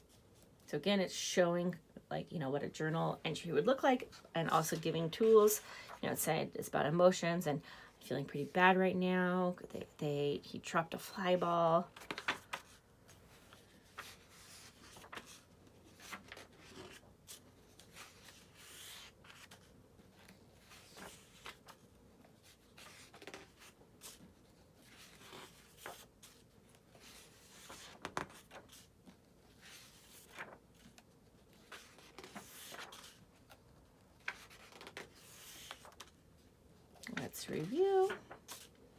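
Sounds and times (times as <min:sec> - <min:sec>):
book pages rustling: 0:11.9 - 0:38.8.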